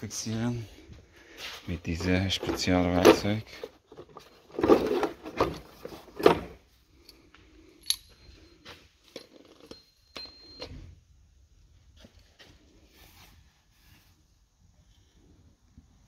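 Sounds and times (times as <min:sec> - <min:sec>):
steel tools clinking: 0:07.0 - 0:10.7.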